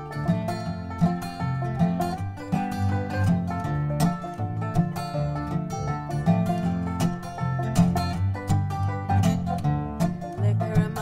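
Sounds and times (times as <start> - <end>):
acoustic guitar notes: 0.0 - 11.0
banjo picking: 0.0 - 11.0
low bass notes: 0.0 - 11.0.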